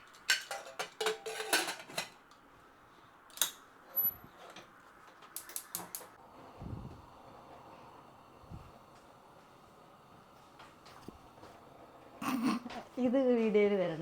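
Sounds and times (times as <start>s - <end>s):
metal cookware clicking and clattering: 0.0s - 2.2s.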